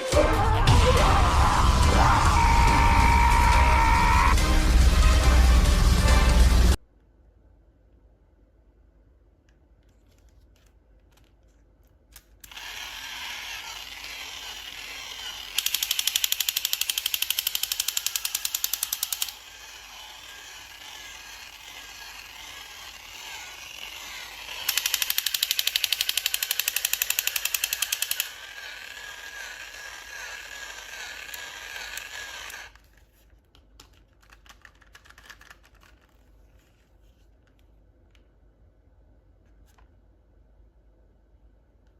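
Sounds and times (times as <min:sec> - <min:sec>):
loud fast rattling clicks: 0:12.4 - 0:32.8
mechanical whirring: 0:12.4 - 0:32.8.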